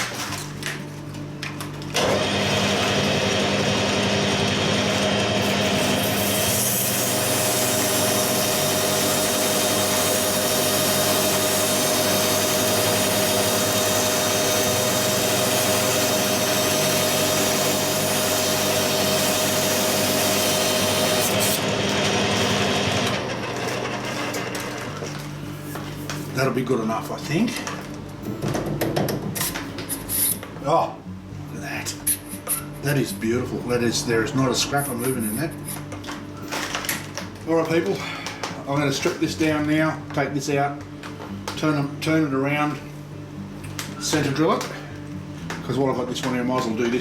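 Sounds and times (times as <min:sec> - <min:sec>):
lathe motor hum: 0:02.0 - 0:24.8.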